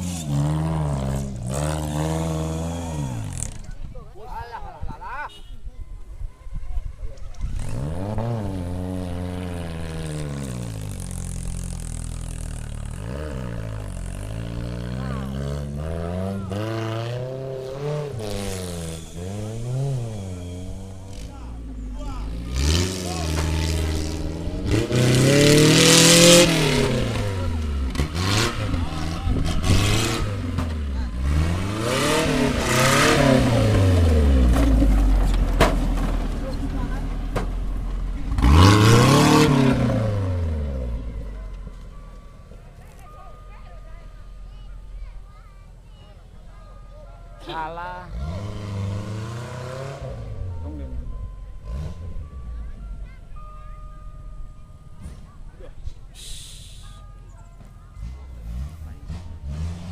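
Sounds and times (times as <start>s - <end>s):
off-road vehicle engine revving: 0.0s - 4.2s, 7.2s - 59.9s.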